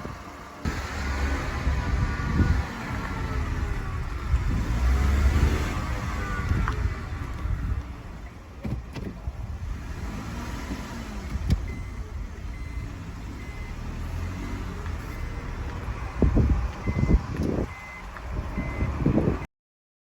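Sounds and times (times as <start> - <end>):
car engine rumble: 0.0 - 19.5
knocks and thumps: 8.6 - 9.2
short electronic beep: 15.1 - 19.0.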